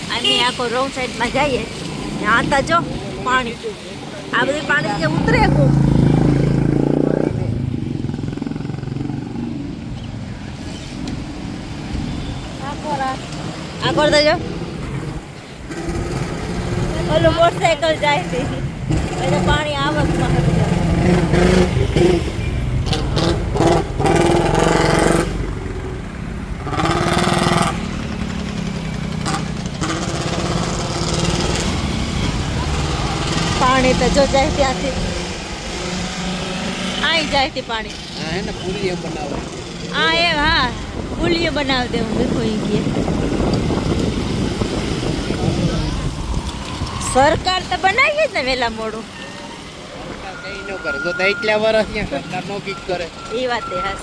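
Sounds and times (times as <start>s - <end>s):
vehicle engine rumbling: 0.0s - 54.0s.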